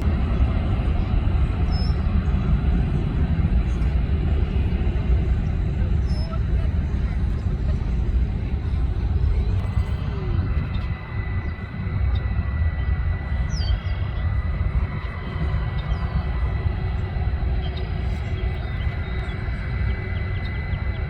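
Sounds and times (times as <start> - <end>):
jet engines rumbling with whine: 0.0 - 21.0.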